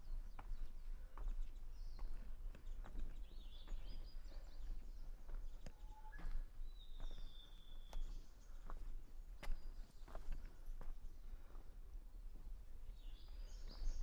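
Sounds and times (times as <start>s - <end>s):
bird singing whistles: 5.8s - 6.4s.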